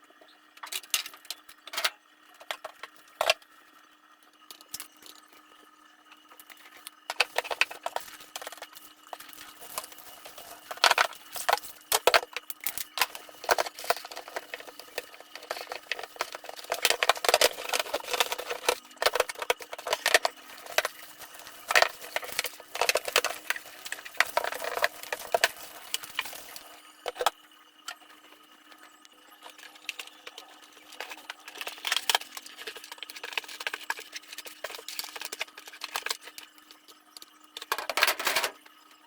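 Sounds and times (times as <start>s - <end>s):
faint steady hum: 0.0s - 39.0s
kitchen items knocking and clinking: 6.6s - 27.3s, 37.5s - 38.6s.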